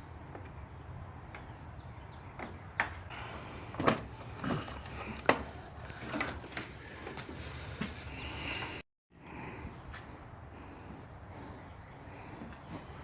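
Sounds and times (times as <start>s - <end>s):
knocks and clicks of motorcycle parts: 2.4s - 3.0s.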